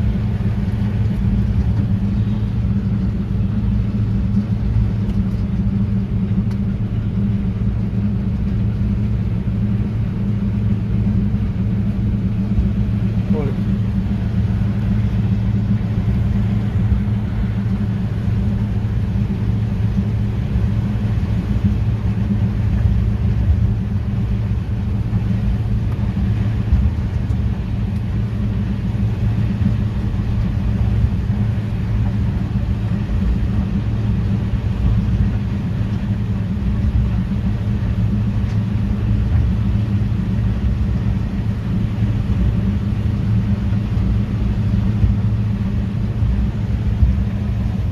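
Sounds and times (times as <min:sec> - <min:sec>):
combine harvester hum: 0:00.0 - 0:47.9.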